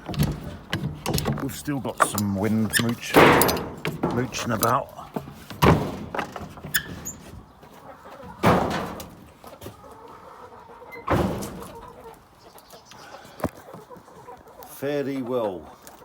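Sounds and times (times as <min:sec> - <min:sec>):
loud sudden knocks: 0:02.9 - 0:04.6, 0:05.4 - 0:06.4
hens clucking softly: 0:06.6 - 0:16.0.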